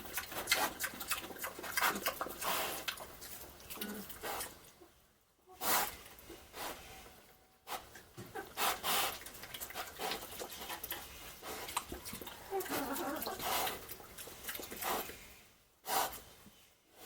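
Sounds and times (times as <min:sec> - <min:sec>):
pig munching wetly: 0:00.0 - 0:04.6, 0:07.7 - 0:15.2.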